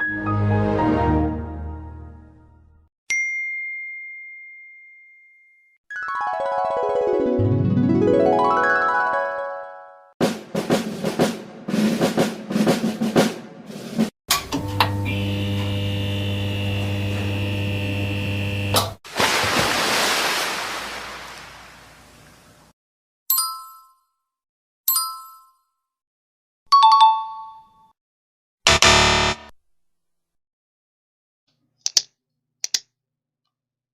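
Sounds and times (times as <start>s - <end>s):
bell-like dings: 3.1s - 5.8s, 23.3s - 24.2s, 24.9s - 25.8s
electric buzz: 14.6s - 19.0s, 28.7s - 29.5s.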